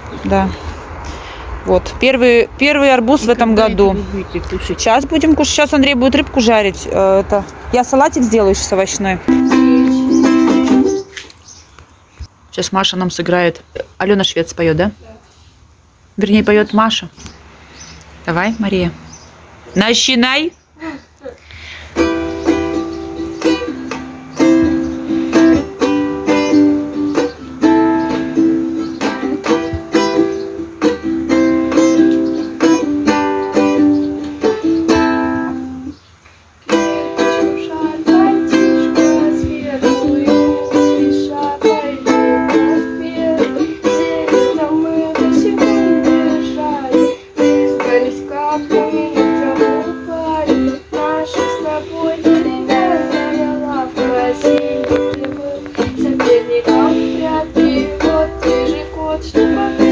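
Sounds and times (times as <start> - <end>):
person singing: 9.3 - 11.0, 36.7 - 59.9
ukulele strummed in chords: 9.3 - 11.1, 22.0 - 35.9, 36.7 - 59.9.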